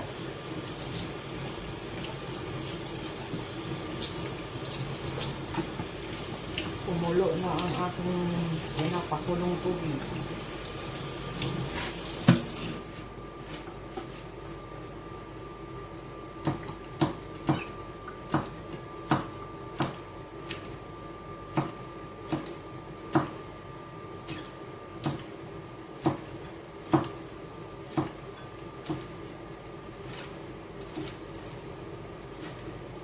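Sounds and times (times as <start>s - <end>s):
faint hum: 0.0s - 16.6s.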